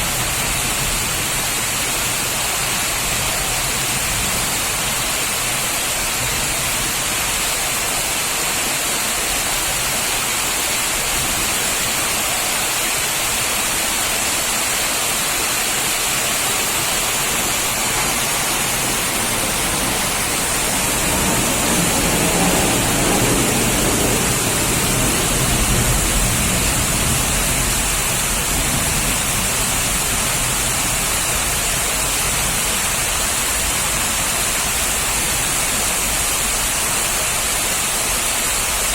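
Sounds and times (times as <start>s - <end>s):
heavy rain falling: 0.0s - 38.9s
low rumble: 17.0s - 30.2s.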